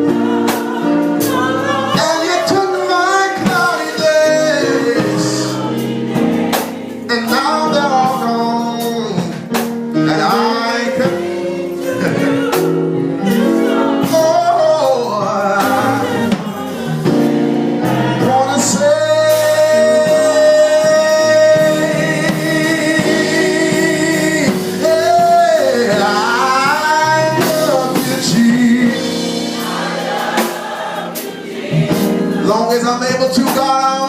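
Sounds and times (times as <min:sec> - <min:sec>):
person singing: 0:00.0 - 0:05.8, 0:17.9 - 0:29.3
band accompaniment: 0:00.0 - 0:34.0.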